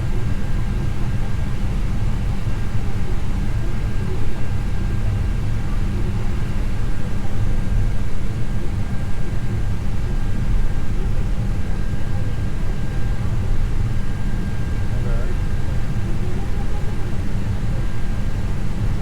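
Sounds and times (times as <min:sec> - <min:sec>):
air conditioning running: 0:00.0 - 0:19.0.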